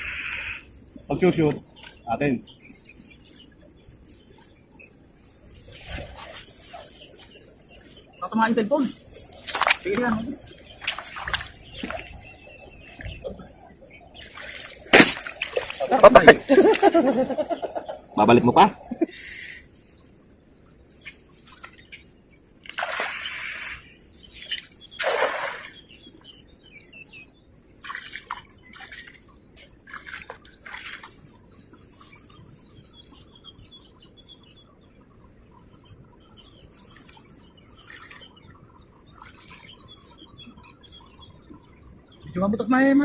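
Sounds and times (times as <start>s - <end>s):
insects chirping in pulses: 0.0s - 43.0s
water splashing in a river: 9.4s - 13.0s, 14.2s - 17.0s, 22.7s - 23.8s, 25.0s - 25.8s, 27.8s - 31.4s.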